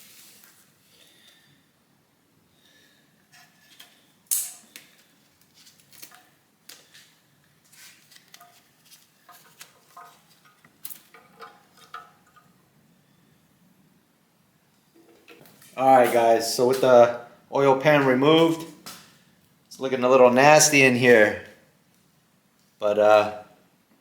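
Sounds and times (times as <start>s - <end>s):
metallic clanks of tools and parts: 9.3s - 12.5s.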